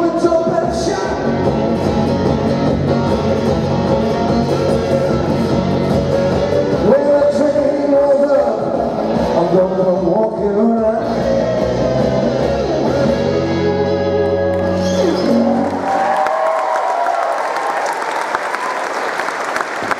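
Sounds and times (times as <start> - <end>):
live blues guitar: 0.0 - 15.7.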